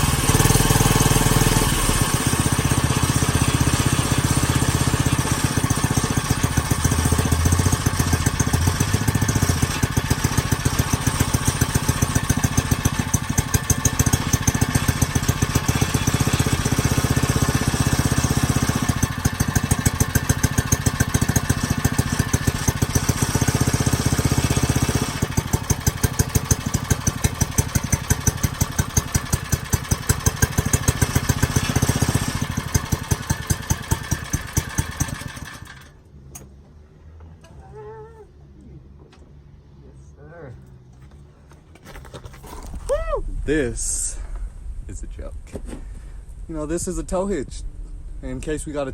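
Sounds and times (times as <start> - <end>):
small engine running: 0.0 - 36.0.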